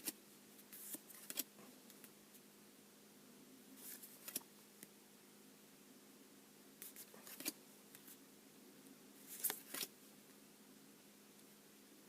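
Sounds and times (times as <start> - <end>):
low steady hum: 0.0 - 12.0
trading cards rustling: 3.8 - 4.4, 6.8 - 7.6, 9.3 - 9.9.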